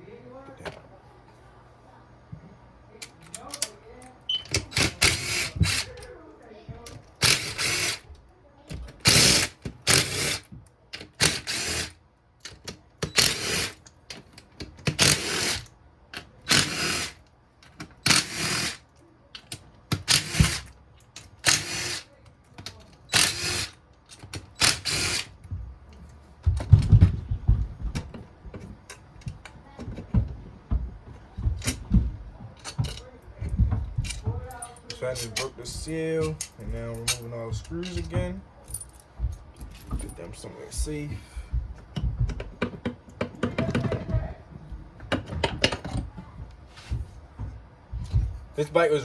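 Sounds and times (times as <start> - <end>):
ratchet wrench clicking: 4.5 - 5.9, 7.2 - 8.0, 9.0 - 11.9, 13.0 - 13.8, 14.9 - 15.7, 16.5 - 17.2, 18.0 - 18.8, 19.4 - 20.7, 21.3 - 22.1, 23.1 - 25.3.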